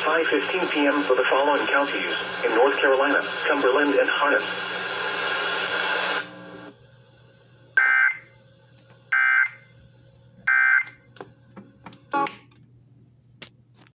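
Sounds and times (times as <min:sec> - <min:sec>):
warbling digital data tones: 0:07.8 - 0:08.4, 0:09.1 - 0:09.7, 0:10.5 - 0:11.0.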